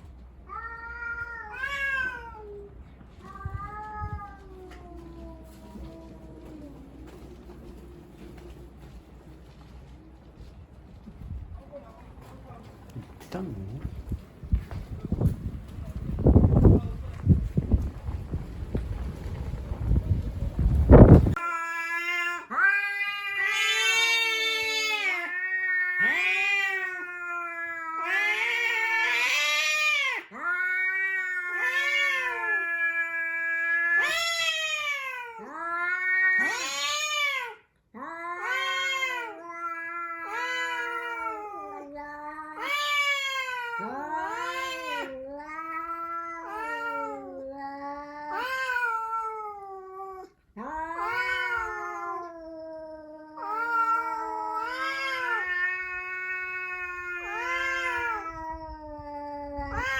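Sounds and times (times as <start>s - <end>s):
cat yowling: 21.3s - 59.9s.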